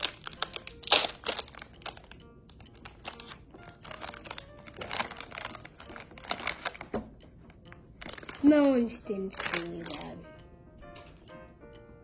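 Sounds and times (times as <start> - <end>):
plastic packaging crinkling: 0.0 - 6.9, 8.0 - 8.5, 9.4 - 10.2.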